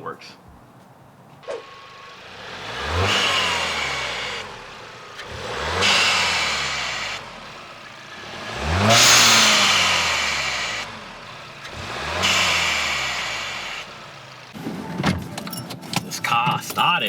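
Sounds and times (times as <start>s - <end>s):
car engine revving: 1.4s - 14.8s.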